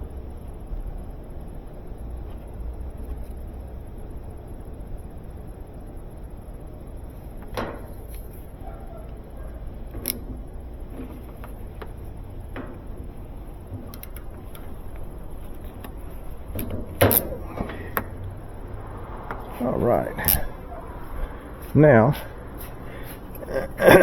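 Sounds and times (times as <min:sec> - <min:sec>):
low hum: 0:00.0 - 0:24.0
parts and tools clicking: 0:09.8 - 0:18.4.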